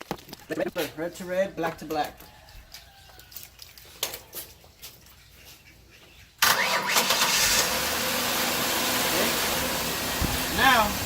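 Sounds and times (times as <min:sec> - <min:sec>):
car engine starting and running: 0:06.4 - 0:11.0.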